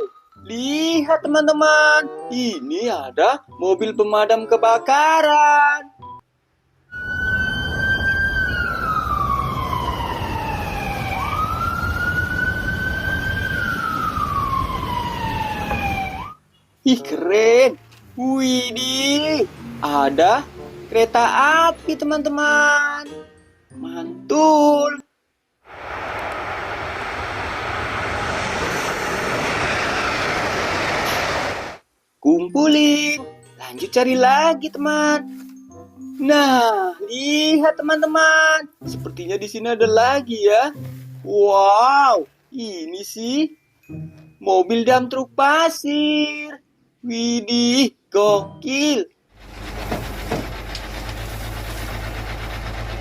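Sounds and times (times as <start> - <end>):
fire engine siren wailing: 6.9 - 16.4, 25.7 - 31.8
low rumble: 25.7 - 31.8, 49.4 - 53.0
vehicle rushing by: 25.7 - 31.9.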